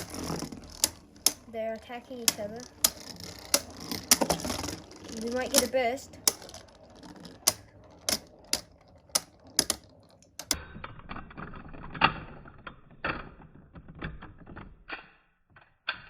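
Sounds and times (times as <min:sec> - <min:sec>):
spinning tops clashing: 0:00.0 - 0:10.6.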